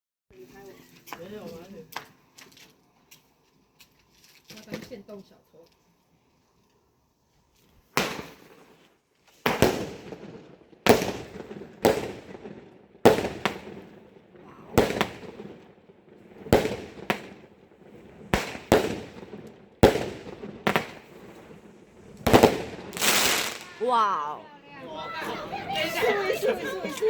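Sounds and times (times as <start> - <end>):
firework bangs with rumbling echo: 7.9 - 8.8, 9.4 - 23.8.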